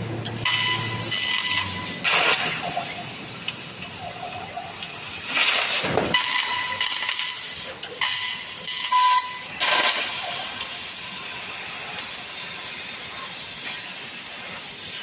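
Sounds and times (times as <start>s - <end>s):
thin steady whine: 0.0s - 15.0s
gas hiss from laser cutter: 6.1s - 15.0s.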